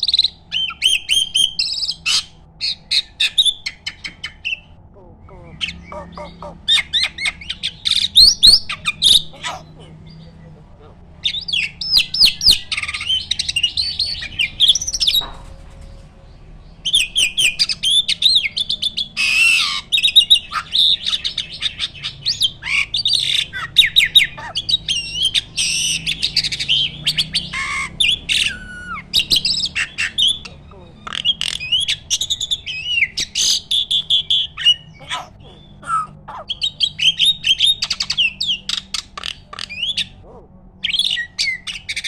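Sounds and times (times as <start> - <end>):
starling song: 0.4 - 15.1.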